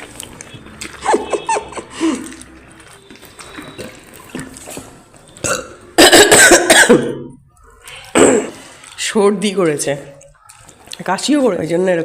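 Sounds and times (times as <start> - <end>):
soft eating sounds: 0.0 - 6.0, 7.2 - 12.0
loud burp: 5.4 - 7.4, 8.1 - 8.6.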